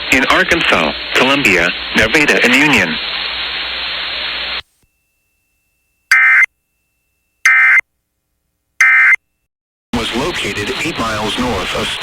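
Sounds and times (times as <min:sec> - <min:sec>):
radio static hiss: 0:00.0 - 0:04.9, 0:10.0 - 0:12.0
harsh buzzing data tones: 0:05.0 - 0:07.9, 0:08.8 - 0:09.3.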